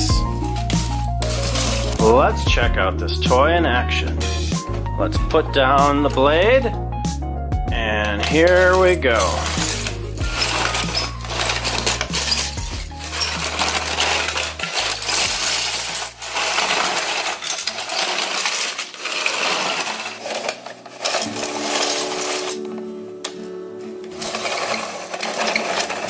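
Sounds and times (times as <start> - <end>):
clinking rattles: 0.0 - 2.2, 8.1 - 23.4, 24.1 - 26.0
toy bulldozer scraping through dirt: 0.0 - 2.5, 3.2 - 6.8, 7.9 - 23.4, 24.0 - 26.0
background music: 0.0 - 26.0.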